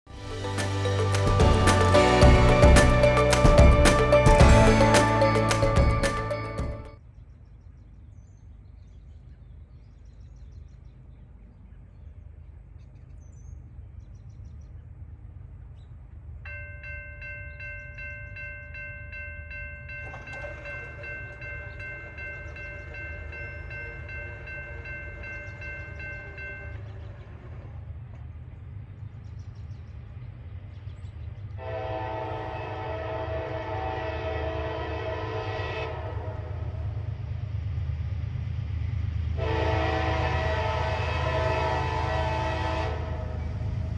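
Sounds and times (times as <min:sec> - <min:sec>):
train low rumble: 0:00.1 - 0:07.0, 0:10.6 - 0:43.9
locomotive horn blast: 0:00.2 - 0:06.9, 0:31.6 - 0:36.9, 0:39.4 - 0:43.6.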